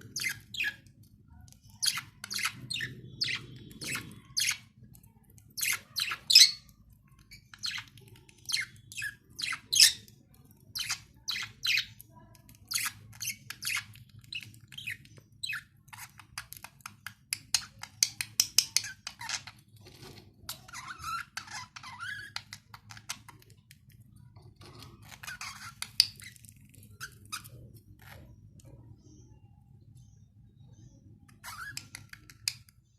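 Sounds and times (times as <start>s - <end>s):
budgerigars chirping and squawking: 0.0s - 0.9s, 1.6s - 10.1s, 24.4s - 28.8s.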